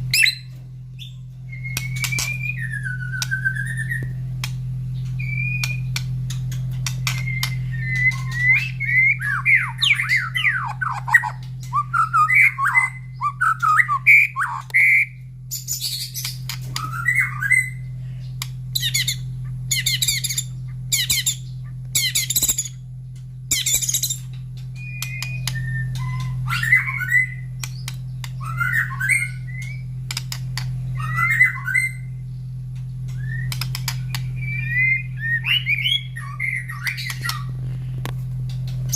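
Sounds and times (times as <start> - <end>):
steady low hum: 0.0 - 38.9
bird singing whistled phrases: 7.1 - 17.8, 24.8 - 29.8, 33.2 - 37.5.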